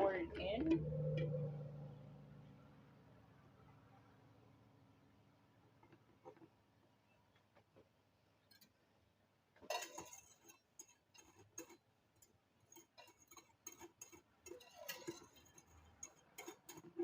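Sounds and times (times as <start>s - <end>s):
glass jar clicks and clinks: 9.7s - 11.8s, 12.8s - 16.9s.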